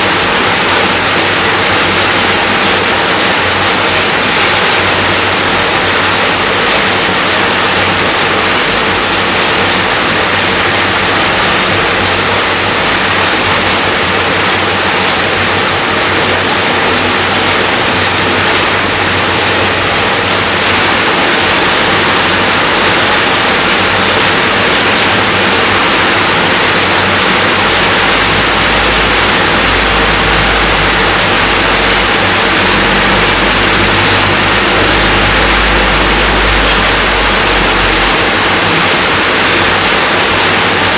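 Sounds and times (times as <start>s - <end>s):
steady dense rainfall hiss: 0.0s - 40.9s
low rumble: 27.7s - 39.0s.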